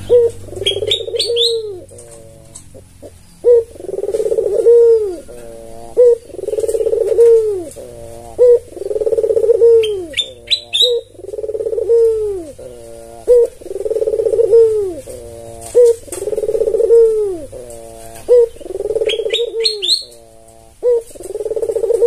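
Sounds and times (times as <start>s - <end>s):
dove cooing: 0.0s - 22.0s
small bird chirping: 0.0s - 22.0s.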